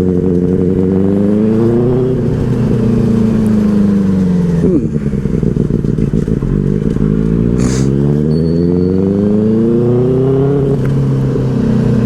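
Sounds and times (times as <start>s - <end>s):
motorcycle engine accelerating: 0.0s - 12.0s
brief hiss: 7.6s - 7.9s.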